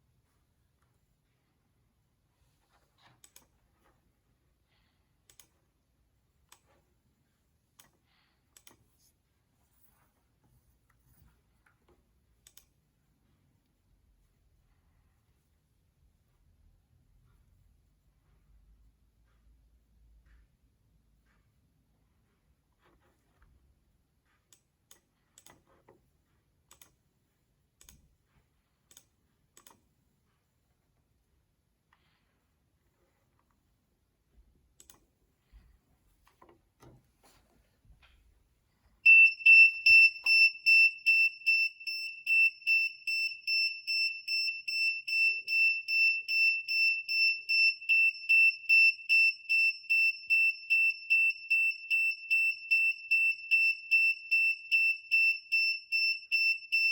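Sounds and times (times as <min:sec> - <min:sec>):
computer mouse and keys clicking: 0:02.4 - 0:04.0, 0:05.2 - 0:05.7, 0:06.3 - 0:06.9, 0:07.6 - 0:09.2, 0:10.4 - 0:12.8, 0:24.4 - 0:27.1, 0:27.7 - 0:29.9, 0:34.7 - 0:35.2.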